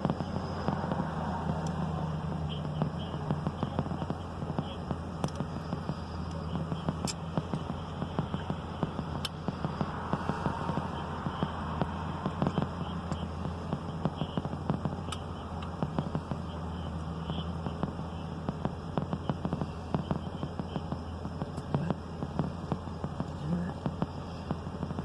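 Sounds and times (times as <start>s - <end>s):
car engine idling: 0.0s - 25.0s.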